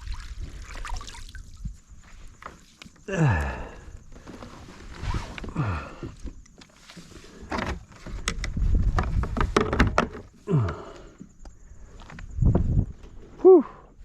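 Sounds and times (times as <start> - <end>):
fishing gear clicking and knocking: 7.5 - 10.8.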